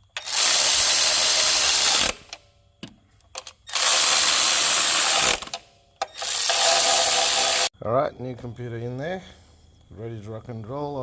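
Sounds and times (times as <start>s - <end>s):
cordless power driver running: 6.3s - 7.7s.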